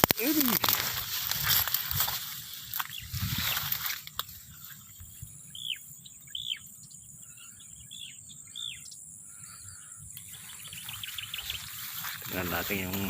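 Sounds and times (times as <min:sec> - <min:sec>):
bird calling: 0:00.0 - 0:13.0
rustling handling noise: 0:00.2 - 0:05.1.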